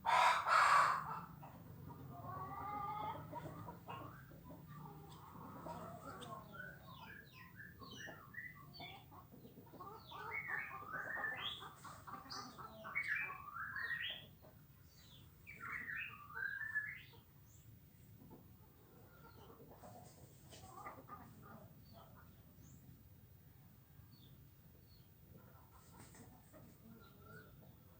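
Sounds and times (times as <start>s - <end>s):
hen clucking: 0.0s - 22.4s
small birds chirping: 1.1s - 23.1s, 24.0s - 27.9s.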